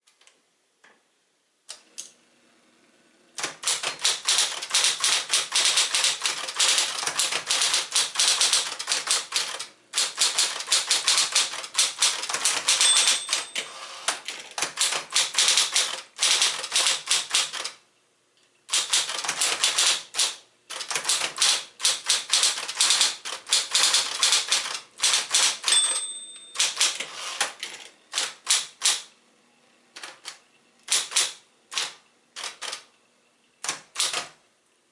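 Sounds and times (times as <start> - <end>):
typewriter key strikes: 3.4 - 17.8, 18.7 - 29.1, 30.0 - 32.9, 33.6 - 34.4
typewriter margin bell ringing: 10.0 - 13.9, 22.3 - 27.4.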